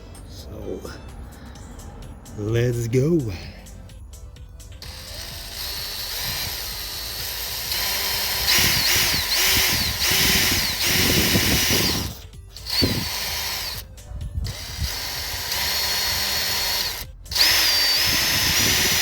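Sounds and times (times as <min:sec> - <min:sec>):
power drill whining: 0:04.8 - 0:13.8, 0:14.5 - 0:19.0.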